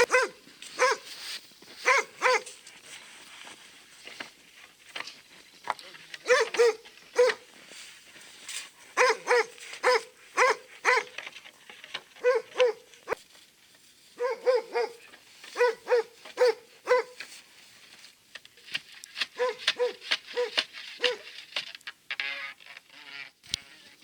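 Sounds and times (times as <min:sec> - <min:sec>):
dog barking: 0:00.0 - 0:01.1, 0:01.8 - 0:02.5, 0:06.2 - 0:07.5, 0:09.0 - 0:11.2, 0:12.2 - 0:13.2, 0:14.2 - 0:17.2, 0:19.4 - 0:21.3.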